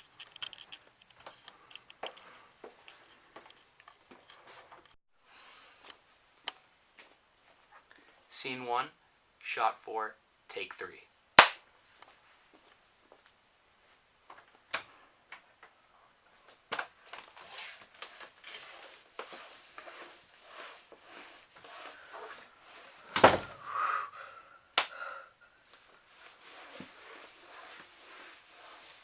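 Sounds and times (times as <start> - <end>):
soft rustling: 25.6 - 29.0.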